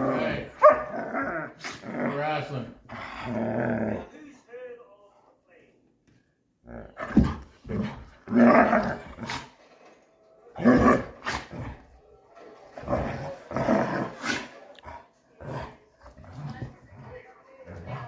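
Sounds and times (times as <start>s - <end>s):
dog play-growling: 0.0s - 4.1s, 6.7s - 9.6s, 12.7s - 18.0s.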